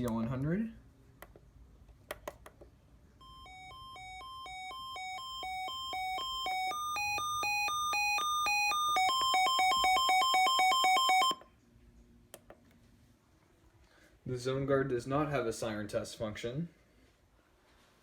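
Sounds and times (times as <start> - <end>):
two-tone siren alarm beeping: 3.2 - 11.5.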